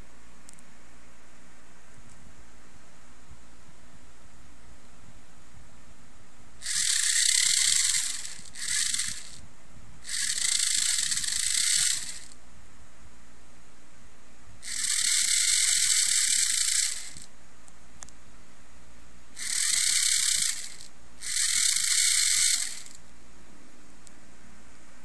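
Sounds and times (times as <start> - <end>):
toy gatling gun whirring: 6.6 - 9.4, 10.0 - 12.4, 14.6 - 17.3, 19.4 - 23.0.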